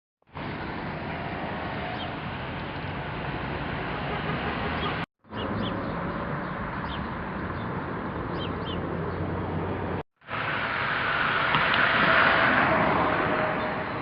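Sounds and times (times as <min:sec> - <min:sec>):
small birds chirping: 0:04.8 - 0:09.4.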